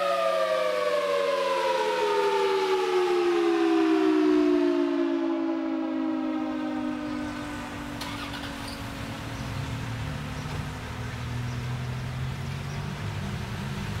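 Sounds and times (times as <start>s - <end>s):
mechanical warning siren winding down: 0.2s - 9.6s
vehicle engine running: 7.4s - 14.0s.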